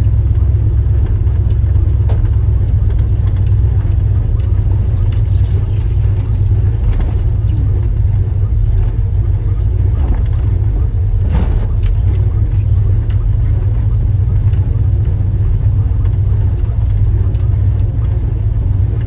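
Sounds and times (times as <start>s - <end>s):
vehicle engine rumbling: 0.0s - 19.0s
knocks and clicks: 10.0s - 19.0s.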